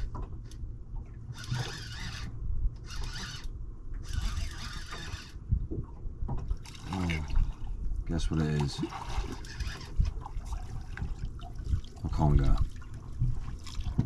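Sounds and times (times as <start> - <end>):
fishing reel whirring: 1.3 - 5.4, 9.1 - 10.2.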